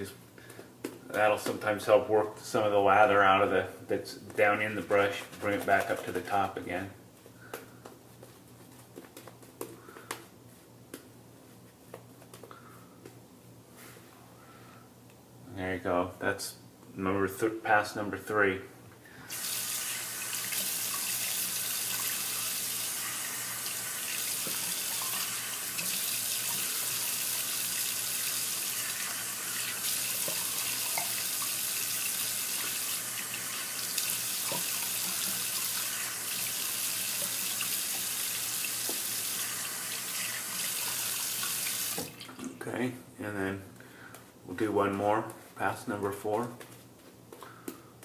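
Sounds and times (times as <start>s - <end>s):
water running from tap: 19.3s - 42.5s.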